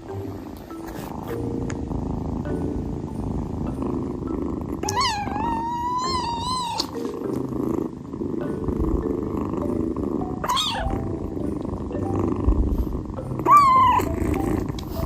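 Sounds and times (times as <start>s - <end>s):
cat purring: 0.0s - 15.0s
cat meowing: 4.8s - 7.0s, 10.4s - 11.0s, 13.4s - 14.2s.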